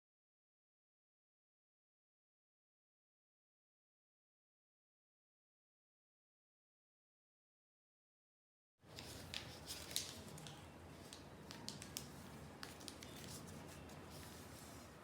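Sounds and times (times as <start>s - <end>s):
paper rustling and crinkling: 8.9s - 15.0s.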